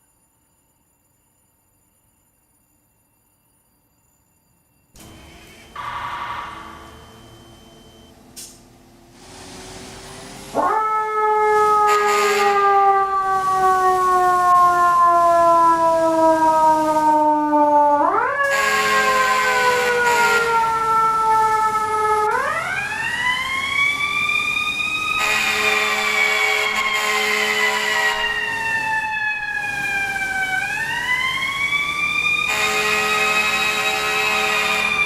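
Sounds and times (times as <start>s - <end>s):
mechanical siren wailing: 5.0s - 8.1s, 10.5s - 35.0s.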